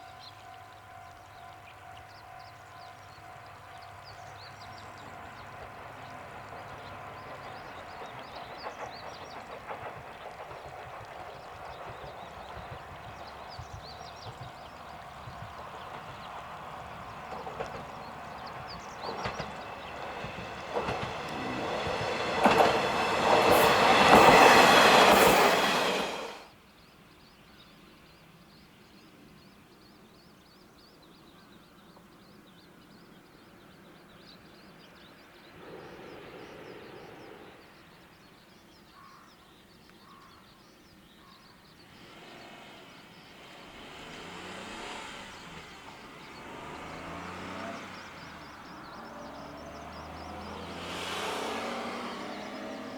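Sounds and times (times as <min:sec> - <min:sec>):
wheels clattering and squealing on rails: 0:00.0 - 0:26.5, 0:41.3 - 0:52.9
outdoor ambience: 0:00.0 - 0:52.9.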